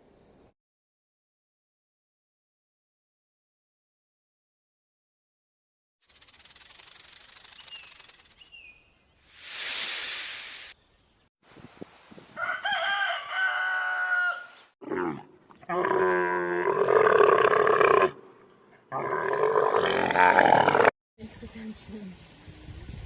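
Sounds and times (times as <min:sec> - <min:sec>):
short loud hiss: 0:09.2 - 0:10.8
fast high-pitched pulsing sound: 0:09.3 - 0:10.7
rooster crowing: 0:12.4 - 0:14.7.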